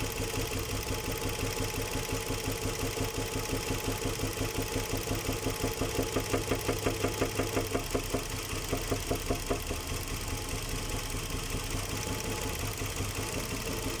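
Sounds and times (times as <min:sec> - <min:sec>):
engine knocking: 0:00.0 - 0:14.0.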